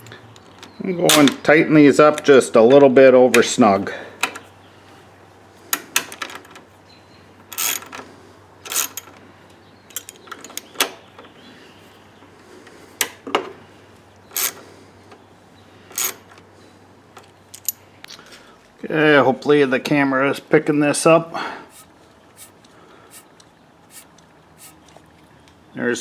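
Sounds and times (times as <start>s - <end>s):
ratchet wrench clicking: 7.5s - 7.9s, 8.7s - 9.1s, 14.3s - 14.6s, 15.9s - 16.4s, 21.7s - 22.5s, 23.9s - 24.9s.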